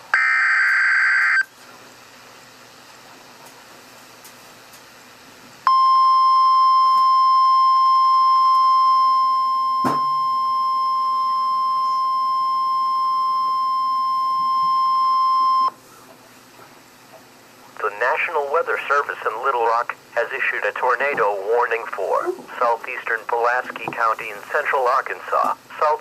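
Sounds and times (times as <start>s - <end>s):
steady high alarm beep: 5.7s - 15.7s.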